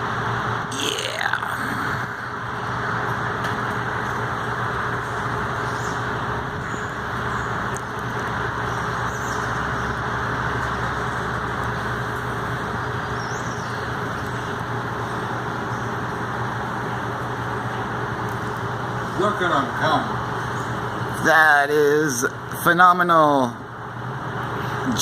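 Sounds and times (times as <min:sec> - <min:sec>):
steady mechanical hum: 0:00.0 - 0:25.0.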